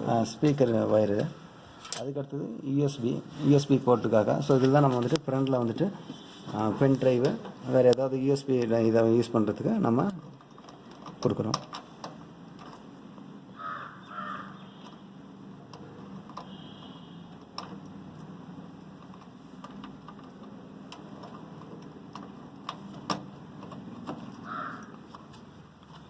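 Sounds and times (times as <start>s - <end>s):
plastic connectors clicking: 17.3s - 26.0s.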